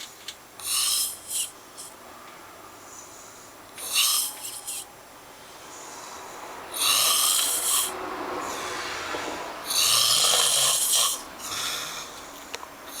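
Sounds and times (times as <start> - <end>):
person snoring loudly: 0.6 - 1.5, 3.8 - 4.8, 6.7 - 12.1
quiet breathing: 2.7 - 9.7, 10.4 - 13.0.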